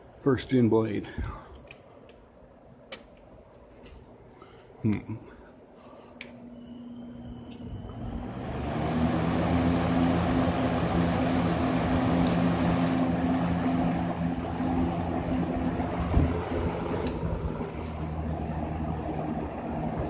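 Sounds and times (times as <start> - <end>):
box fan running: 5.6 - 20.0.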